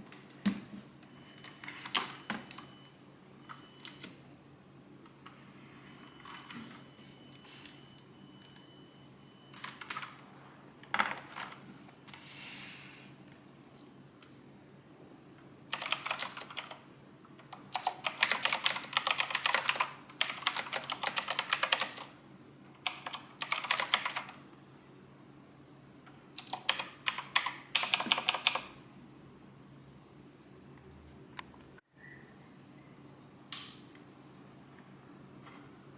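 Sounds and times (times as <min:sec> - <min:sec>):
keyboard typing: 0:15.7 - 0:16.9, 0:17.5 - 0:22.1, 0:22.8 - 0:24.4, 0:26.4 - 0:28.8.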